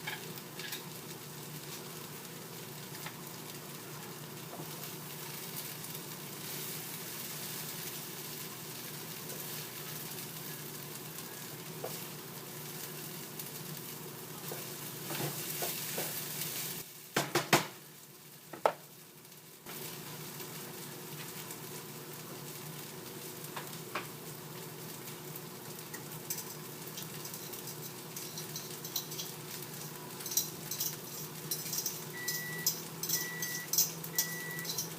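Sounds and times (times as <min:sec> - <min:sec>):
food sizzling in a skillet: 0:00.0 - 0:34.9
utensil clinking on pan: 0:26.3 - 0:34.9
microwave beeping: 0:32.0 - 0:34.9.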